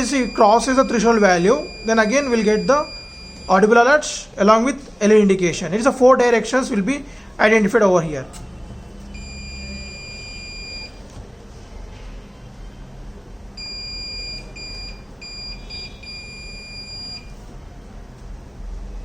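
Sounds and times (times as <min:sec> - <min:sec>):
electronic buzzer beeping: 0:00.0 - 0:03.6, 0:09.1 - 0:11.0, 0:13.6 - 0:17.3.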